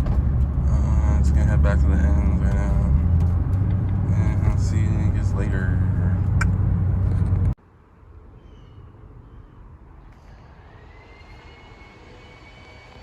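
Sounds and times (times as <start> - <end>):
distant engine rumble: 0.0 - 13.0
thin whine: 10.1 - 13.0.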